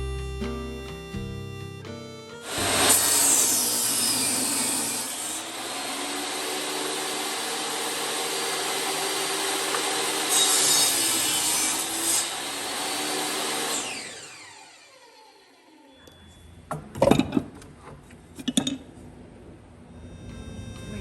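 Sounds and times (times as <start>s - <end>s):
turning tool cutting wood: 2.4s - 15.5s
wood lathe running: 2.4s - 15.6s.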